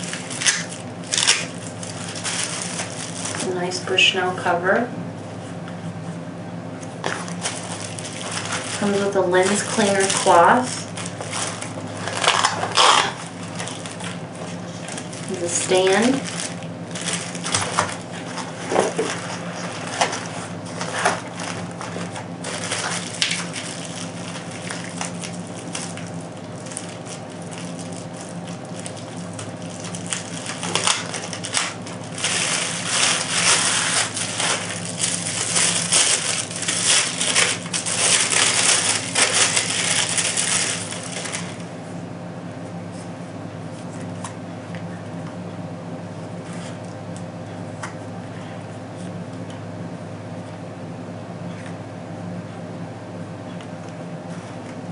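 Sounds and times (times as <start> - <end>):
packaging crinkling and rustling: 0.0 - 3.5, 6.8 - 41.7
steady low hum: 0.0 - 54.9.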